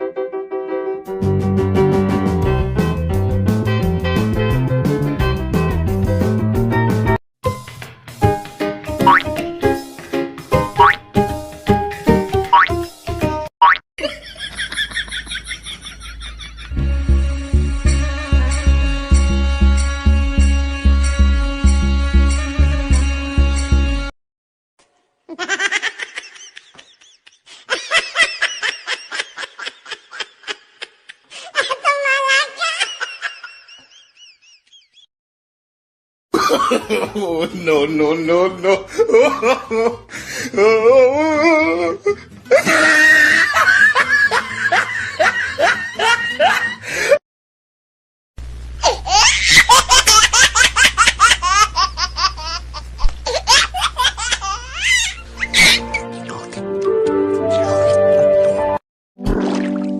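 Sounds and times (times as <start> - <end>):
person laughing hard: 14.0 - 16.8, 25.3 - 34.6, 36.4 - 37.6, 38.5 - 47.2, 48.8 - 56.6.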